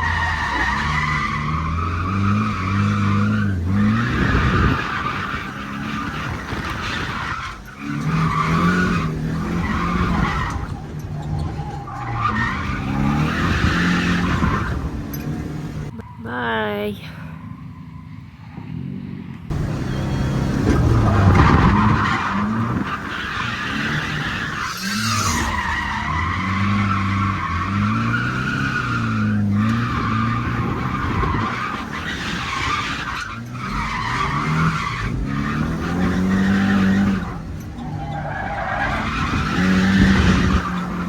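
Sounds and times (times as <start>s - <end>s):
car engine revving hard: 0.0s - 11.1s, 11.8s - 15.9s, 18.7s - 41.0s
tyres squealing: 0.0s - 16.3s, 19.5s - 41.0s.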